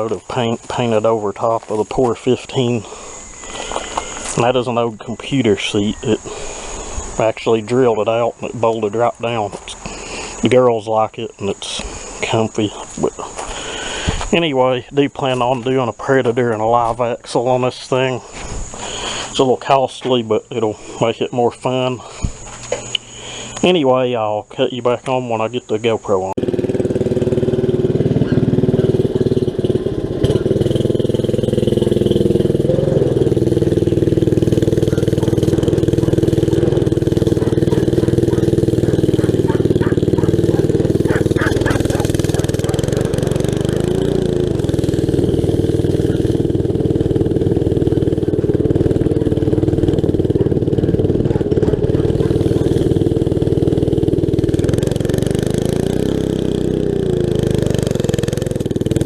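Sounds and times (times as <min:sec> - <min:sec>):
go-kart engine running: 0:26.4 - 0:59.0.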